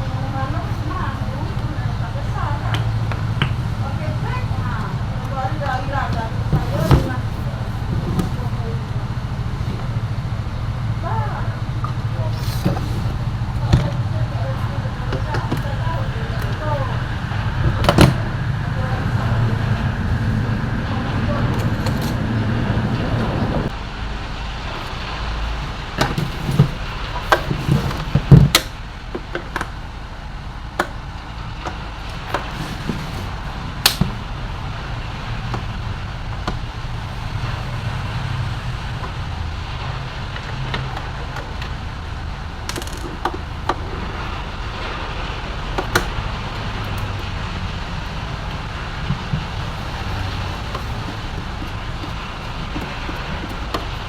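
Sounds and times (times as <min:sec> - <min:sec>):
steady background noise: 0:00.0 - 0:54.0
clicks and knocks of appliance parts: 0:30.7 - 0:34.2, 0:48.5 - 0:54.0.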